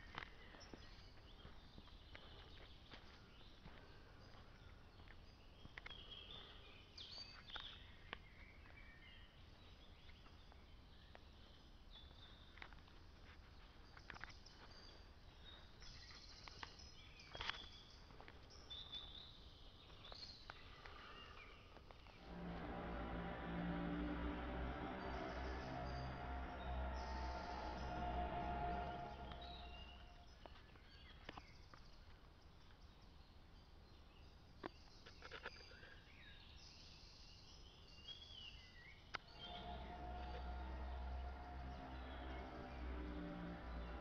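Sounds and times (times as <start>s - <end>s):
low background noise: 0.0s - 44.0s
music: 22.2s - 30.4s, 39.2s - 44.0s.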